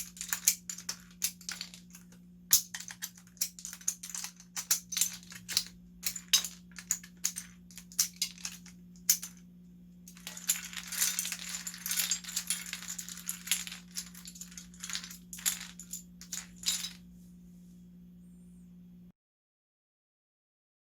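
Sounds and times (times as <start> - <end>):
loose keycaps rattling: 2.6 - 9.4, 10.1 - 17.0.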